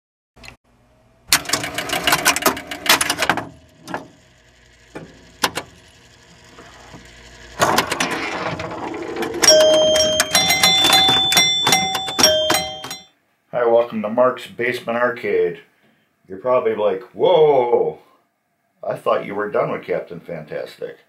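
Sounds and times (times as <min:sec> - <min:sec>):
pinball machine clattering: 0:01.4 - 0:04.2, 0:07.6 - 0:13.1
ringing chime tones: 0:09.4 - 0:13.1.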